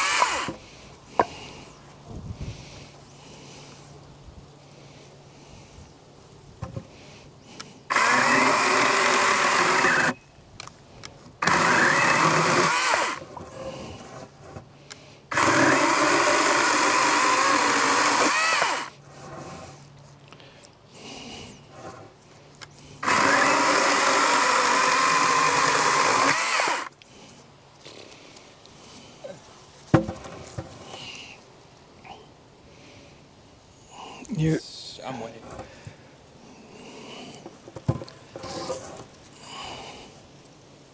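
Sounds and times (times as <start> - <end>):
electric chainsaw cutting wood: 0.0 - 0.6, 7.9 - 10.2, 11.4 - 14.2, 15.3 - 19.4, 23.0 - 27.0.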